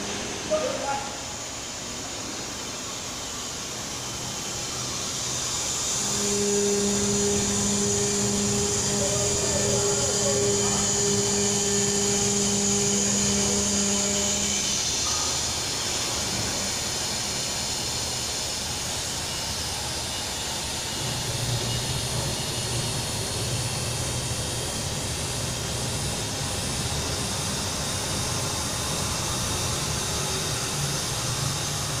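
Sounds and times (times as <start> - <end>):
cutting machine whirring: 0.0 - 32.0
low hum: 5.4 - 15.0.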